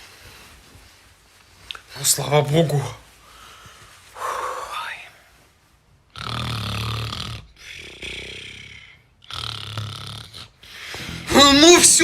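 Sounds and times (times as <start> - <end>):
soft breath: 3.1 - 5.6
low buzzing snore: 6.1 - 11.3.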